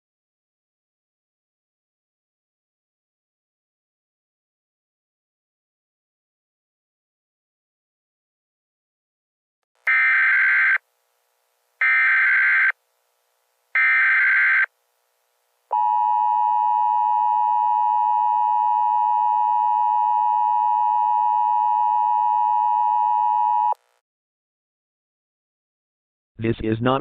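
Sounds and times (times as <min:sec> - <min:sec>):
buzzing data tones: 0:09.9 - 0:10.8.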